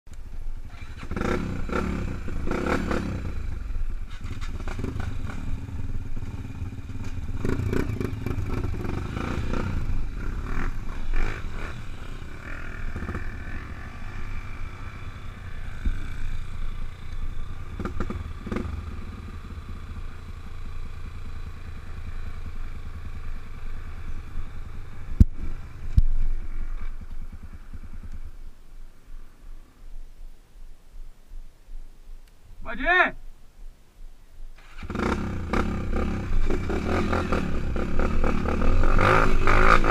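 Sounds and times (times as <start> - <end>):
motorcycle engine revving: 0.6 - 28.4, 34.6 - 39.9.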